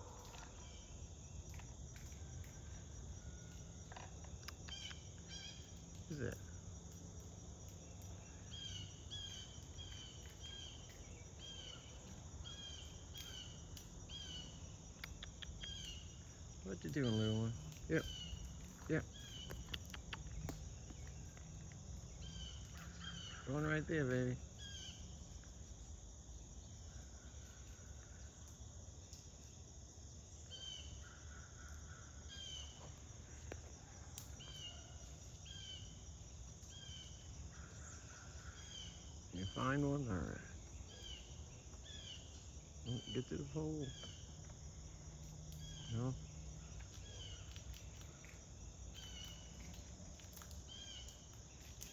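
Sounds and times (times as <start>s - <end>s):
bird chirping: 8.5s - 21.4s.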